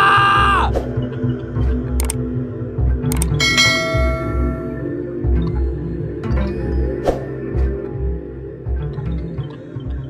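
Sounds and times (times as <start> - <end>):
sustained chords and pulsing bass: 1.0 - 10.0
bell-like chime: 3.4 - 4.9.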